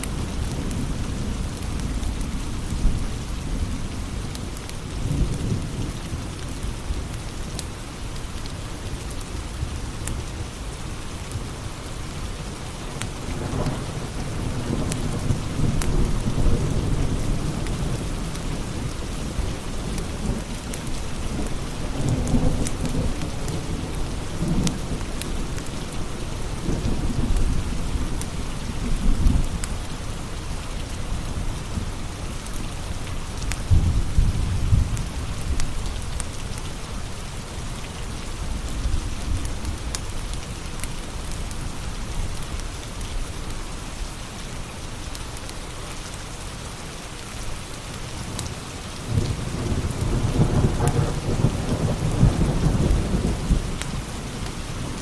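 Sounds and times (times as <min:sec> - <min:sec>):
heavy rain hissing: 0:00.0 - 0:55.0
thunder rumbling: 0:33.6 - 0:36.3, 0:49.0 - 0:55.0.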